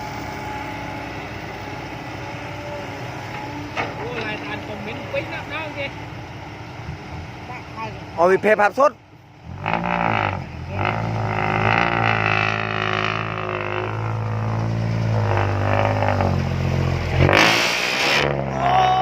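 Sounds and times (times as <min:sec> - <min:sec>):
vehicle engine exhaust droning: 0:00.0 - 0:19.0.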